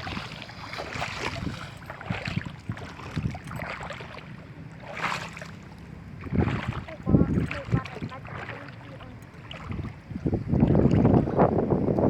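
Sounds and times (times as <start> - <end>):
wind on microphone: 0.0 - 3.7, 6.2 - 12.0
water splashing and sloshing: 0.0 - 12.0.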